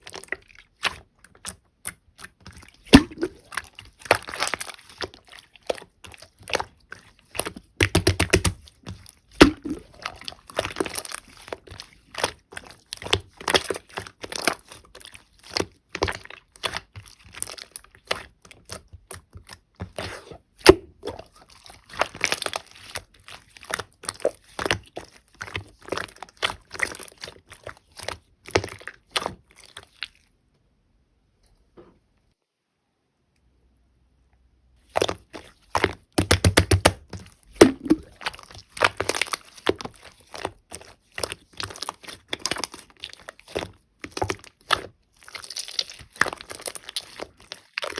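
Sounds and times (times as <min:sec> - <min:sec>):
slime crackling and popping: 0:00.1 - 0:30.0, 0:34.9 - 0:47.9.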